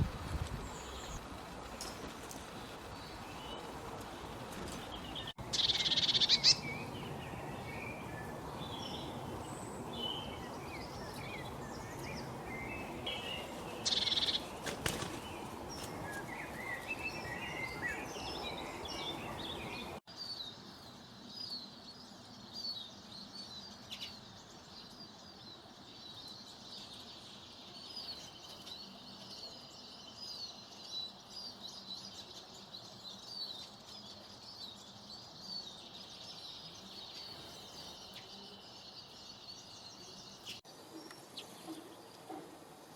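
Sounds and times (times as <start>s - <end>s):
steady background hiss: 0.0s - 42.9s
birds chirping and calling: 4.7s - 20.0s.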